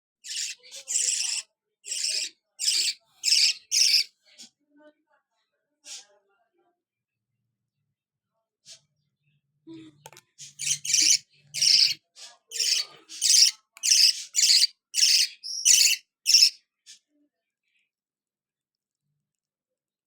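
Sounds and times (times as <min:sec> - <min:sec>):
bird chick raspy chirping: 0:00.3 - 0:04.1, 0:10.5 - 0:16.6.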